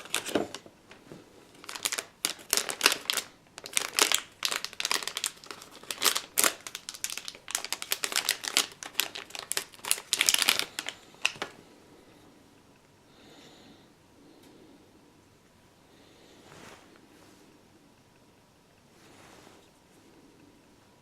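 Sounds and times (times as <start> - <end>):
packaging crinkling: 0.0 - 11.6.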